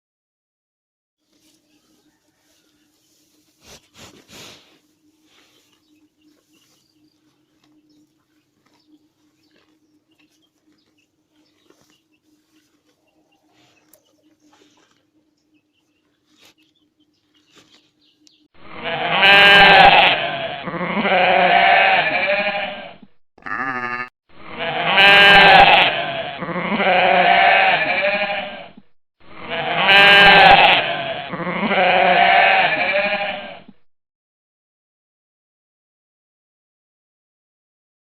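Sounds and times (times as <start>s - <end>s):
sheep bleating: 18.6s - 28.7s, 29.3s - 33.7s.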